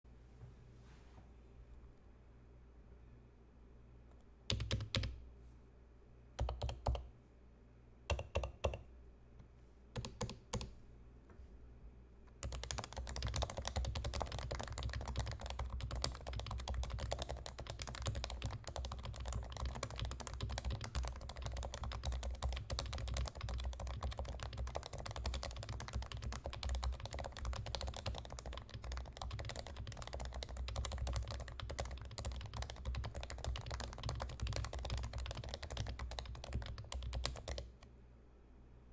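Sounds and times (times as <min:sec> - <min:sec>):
typing on a keyboard: 0:04.5 - 0:05.2, 0:06.4 - 0:07.1, 0:08.1 - 0:08.9, 0:10.0 - 0:10.7, 0:12.4 - 0:37.9.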